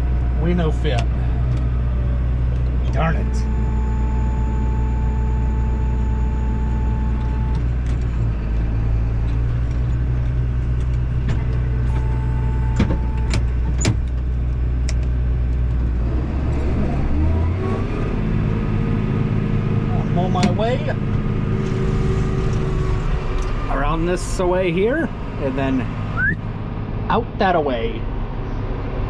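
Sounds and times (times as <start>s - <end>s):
tractor diesel engine running: 0.0s - 17.5s, 18.1s - 29.0s
rising engine whine: 0.0s - 29.0s.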